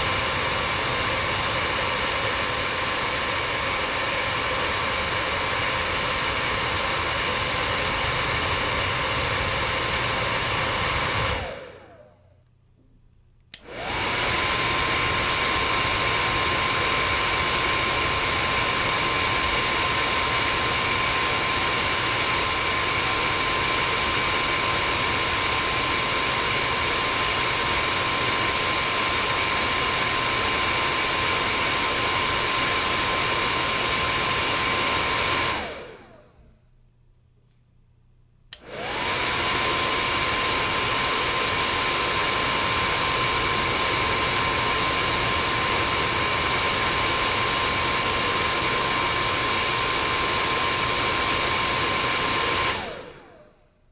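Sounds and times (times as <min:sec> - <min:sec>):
hair dryer running: 0:00.0 - 0:12.4, 0:13.5 - 0:36.6, 0:38.5 - 0:53.9
hair dryer switch click: 0:13.4 - 0:14.2, 0:38.5 - 0:39.2.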